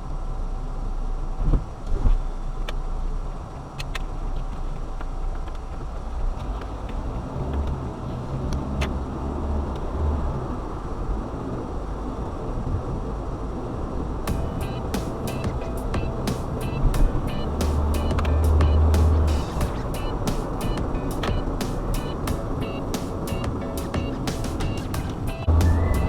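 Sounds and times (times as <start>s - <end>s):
car engine and tyres rumbling: 0.0s - 26.0s
thumps: 14.3s - 26.0s.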